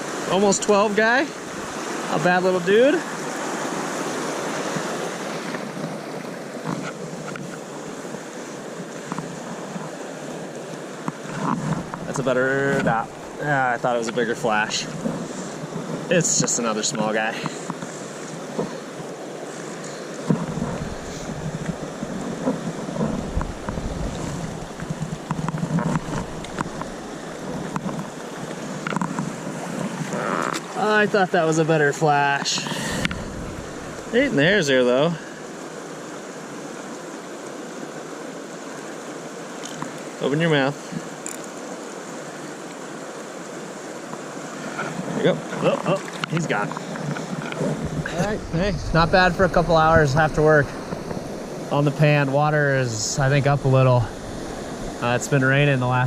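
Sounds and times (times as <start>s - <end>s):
river water rushing: 0.0s - 56.0s
wind buffeting microphone: 20.2s - 30.3s, 32.8s - 34.6s, 46.5s - 51.8s.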